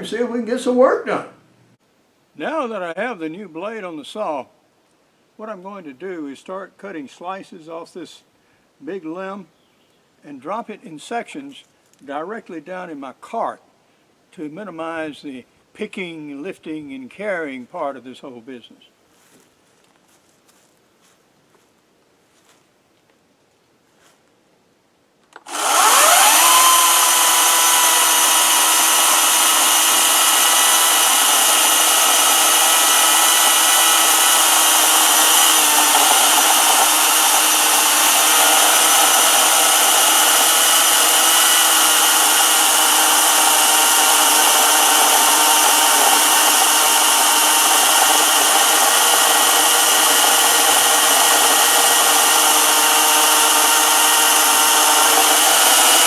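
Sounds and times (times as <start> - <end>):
electric chainsaw cutting wood: 25.3 - 56.0.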